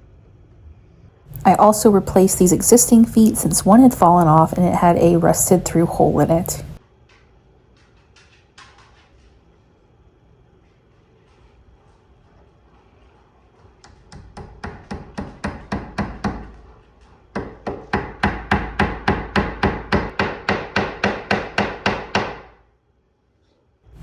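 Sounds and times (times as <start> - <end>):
hammer tapping: 13.8 - 16.6, 17.4 - 22.5.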